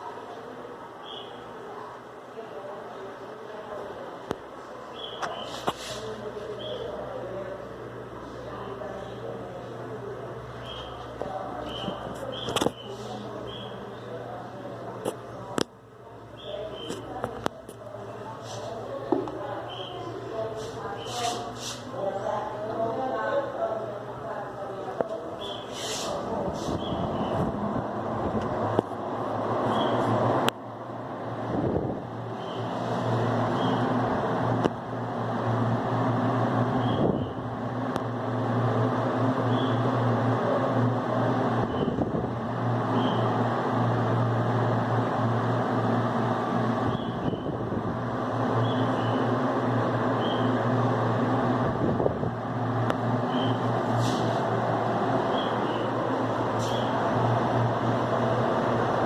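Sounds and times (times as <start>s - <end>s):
table fan running: 0.0s - 59.0s
fan clicks: 10.6s - 12.9s, 15.0s - 15.8s, 28.2s - 29.0s, 34.4s - 34.8s, 37.8s - 38.2s.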